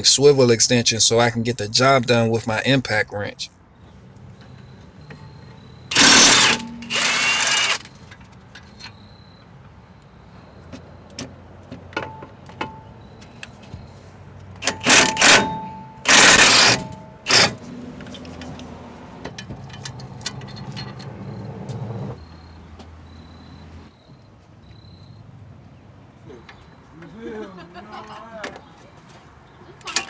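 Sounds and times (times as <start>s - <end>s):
impact wrench bursts: 5.1s - 8.0s, 14.6s - 17.8s.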